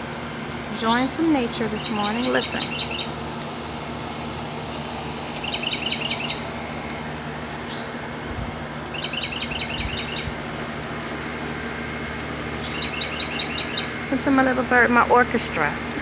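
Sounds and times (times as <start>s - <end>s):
songbird whistling notes: 1.8s - 3.1s, 5.1s - 6.6s, 7.7s - 8.0s, 8.9s - 10.3s, 12.6s - 14.2s.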